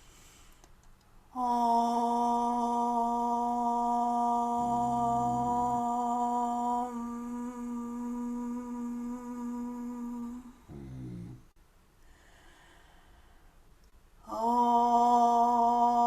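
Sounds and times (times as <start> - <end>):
woman chanting om: 1.3 - 10.7, 14.2 - 16.0.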